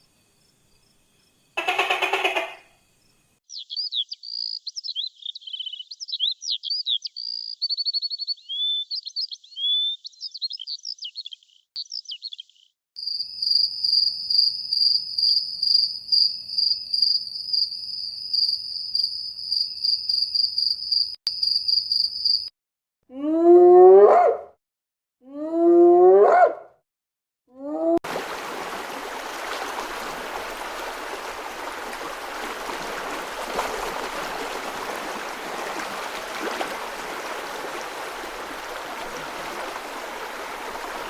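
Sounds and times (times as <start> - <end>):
cricket chirping: 0.0 - 4.9, 13.0 - 22.5
songbird chirping and trilling: 3.4 - 12.7.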